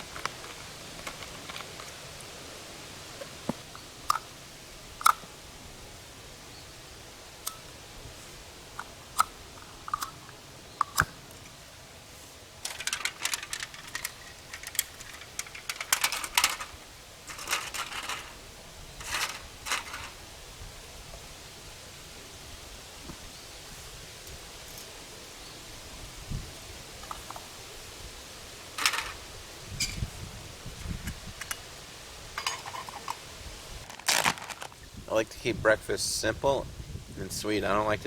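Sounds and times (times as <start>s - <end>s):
crinkling: 0.0s - 2.3s, 12.2s - 18.4s, 19.0s - 20.2s, 28.8s - 29.2s, 33.8s - 34.9s
sharp handling clicks: 12.6s - 18.3s.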